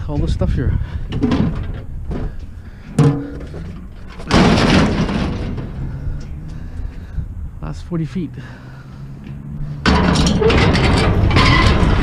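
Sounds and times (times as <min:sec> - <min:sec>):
scrap metal crashing: 0:01.1 - 0:06.2, 0:09.8 - 0:12.0
scrap metal clanging: 0:01.2 - 0:06.4, 0:09.8 - 0:12.0.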